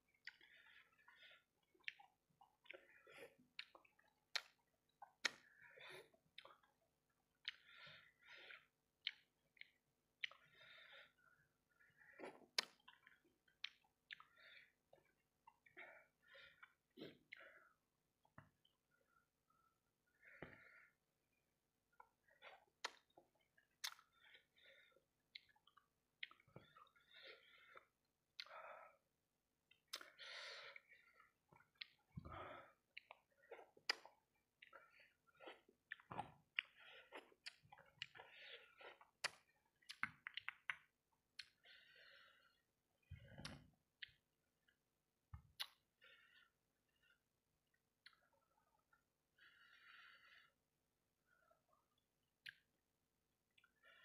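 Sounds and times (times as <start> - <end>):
close-up chewing: 0.1 - 10.5, 25.2 - 28.5, 30.8 - 41.6
wet mouth clicks and smacks: 1.8 - 2.9, 3.6 - 5.5, 7.4 - 7.8, 8.5 - 10.5, 12.3 - 14.3, 22.8 - 24.2, 25.3 - 26.4, 32.9 - 34.8, 35.9 - 38.2, 39.0 - 41.6, 43.4 - 44.2, 45.4 - 45.8, 52.4 - 52.7.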